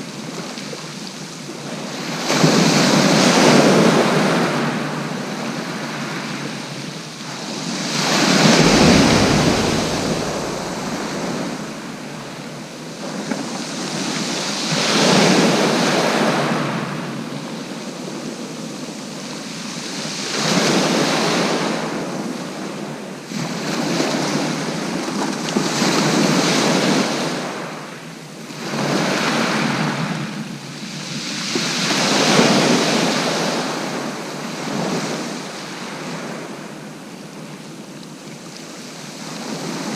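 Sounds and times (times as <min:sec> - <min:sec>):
sea waves breaking on beach: 0:08.3 - 0:12.5.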